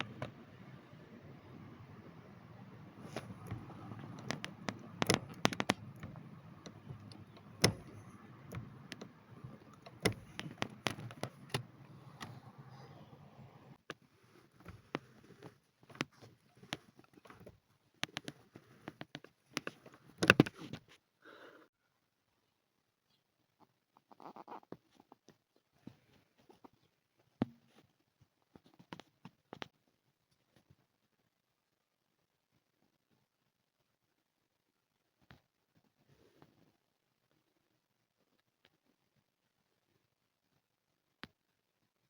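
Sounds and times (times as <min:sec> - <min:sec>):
low steady hum: 0:00.0 - 0:13.8
clutch pedal clicking: 0:02.8 - 0:13.3, 0:15.9 - 0:20.7.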